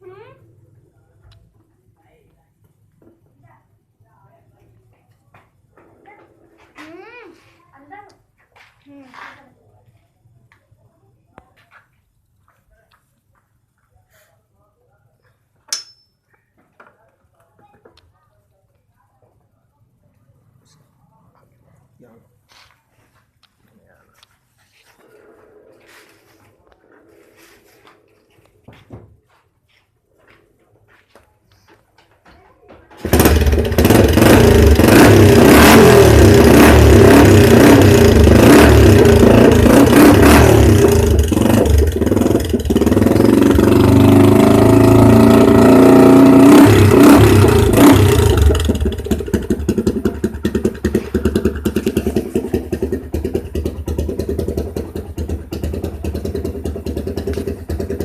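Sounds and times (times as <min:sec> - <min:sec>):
motorcycle engine revving: 0:33.0 - 0:58.0.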